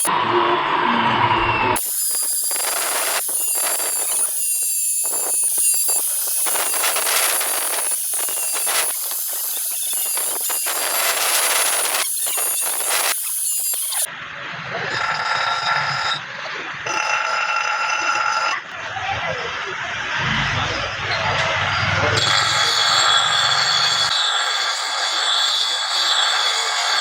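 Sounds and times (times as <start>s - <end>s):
blade grinding on grinding wheel: 1.8s - 14.1s, 14.9s - 16.2s, 16.9s - 18.6s, 22.1s - 27.0s.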